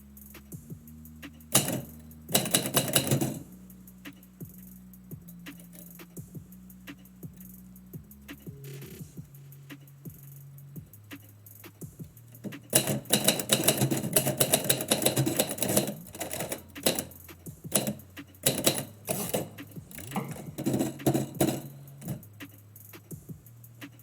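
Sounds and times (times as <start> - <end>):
typewriter keys clacking: 1.5 - 3.5, 12.3 - 22.3.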